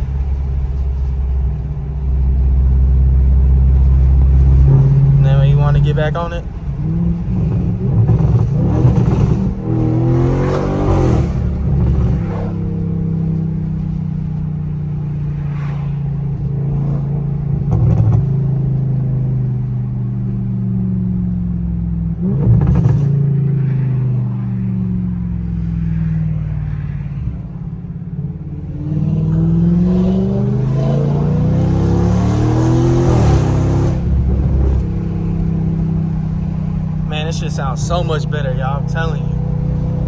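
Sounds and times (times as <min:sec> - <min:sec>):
gear changes: 0:00.0 - 0:18.4
car engine revving: 0:00.0 - 0:27.5, 0:28.2 - 0:40.0.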